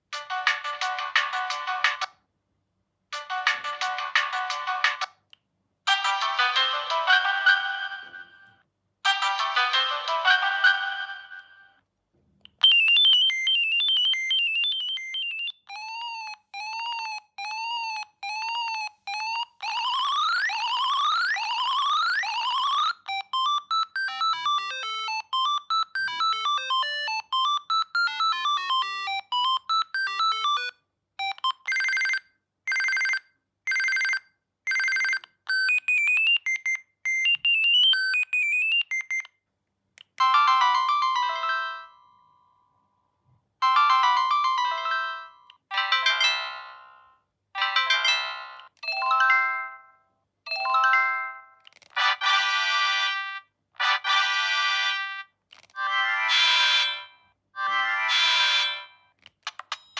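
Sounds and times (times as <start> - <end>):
mobile phone ringtones: 12.6 - 39.3, 43.6 - 47.0, 55.8 - 59.1.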